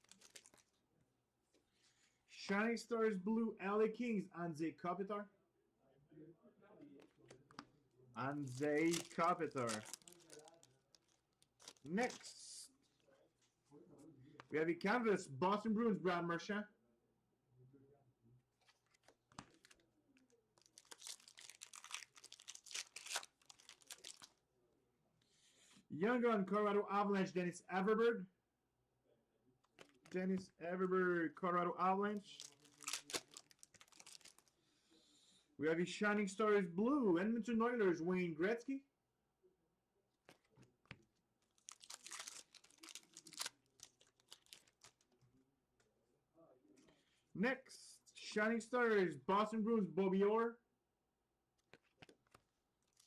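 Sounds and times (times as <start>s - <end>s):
cards rustling: 0.0s - 0.8s, 8.3s - 12.4s, 18.6s - 19.8s, 20.6s - 24.3s, 29.7s - 30.4s, 32.2s - 34.5s, 40.3s - 45.1s, 51.6s - 53.0s
foil wrapper crinkling and tearing: 0.0s - 0.8s, 8.4s - 12.2s, 20.6s - 24.4s, 32.2s - 34.5s, 41.4s - 45.1s, 51.7s - 53.0s.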